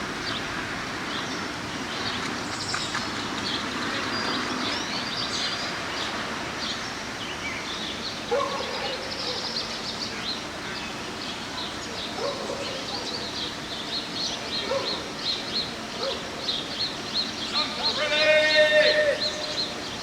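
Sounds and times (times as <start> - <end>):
outdoor background noise: 0.0 - 20.0
small birds chirping and singing: 0.2 - 20.0.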